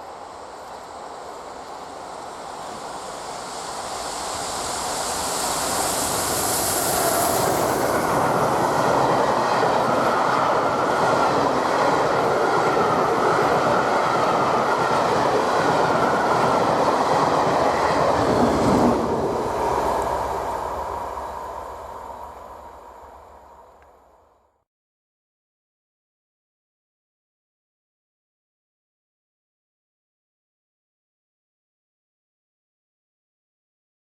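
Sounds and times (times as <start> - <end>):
wheels rushing on rail: 0.0 - 24.5
steam train passing at speed: 0.0 - 24.6.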